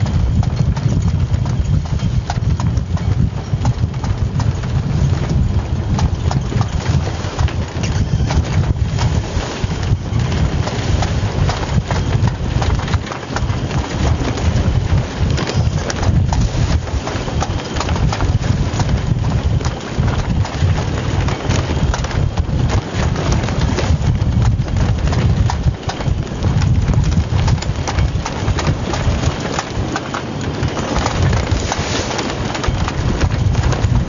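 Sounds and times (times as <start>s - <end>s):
wind buffeting microphone: 0.0s - 34.0s.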